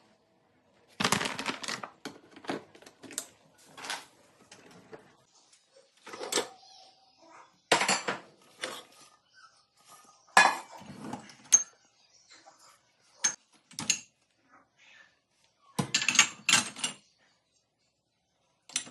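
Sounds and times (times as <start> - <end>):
dishes and cutlery clattering: 7.7 - 8.9, 10.3 - 11.8, 13.2 - 14.2, 15.8 - 17.1.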